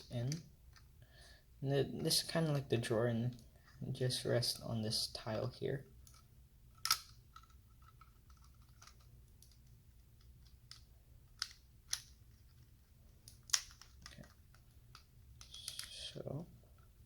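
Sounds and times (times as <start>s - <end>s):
plastic pieces clicking: 13.2s - 16.0s.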